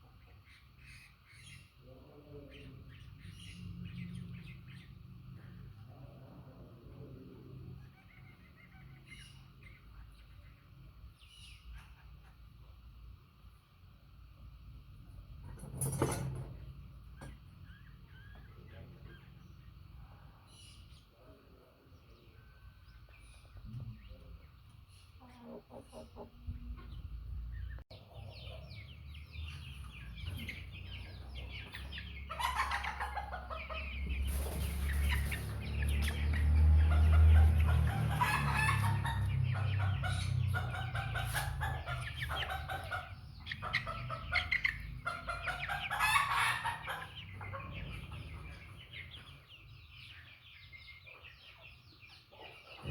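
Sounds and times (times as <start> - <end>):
hens clucking and calling: 25.0 - 27.1, 29.5 - 49.4.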